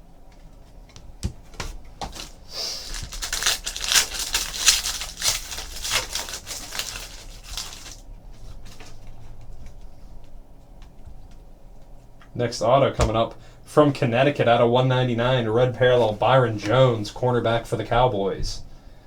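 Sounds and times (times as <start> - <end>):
wrapper tearing and crinkling: 2.1 - 8.1.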